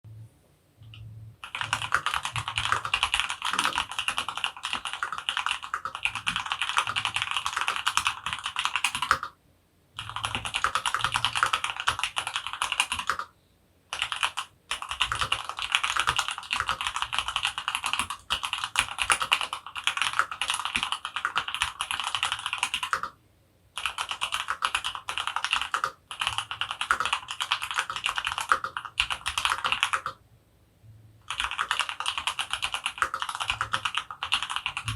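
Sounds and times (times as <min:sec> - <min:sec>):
fast typing on mechanical keyboard: 0:01.4 - 0:09.4, 0:10.0 - 0:13.3, 0:13.9 - 0:23.2, 0:23.8 - 0:30.2, 0:31.2 - 0:34.9.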